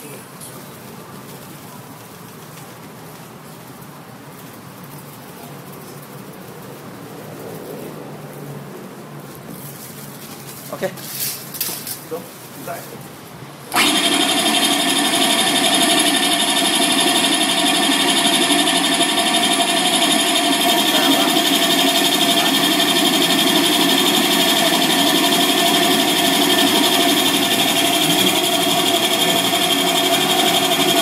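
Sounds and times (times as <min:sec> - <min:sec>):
coffee grinder running: 0:13.7 - 0:31.0.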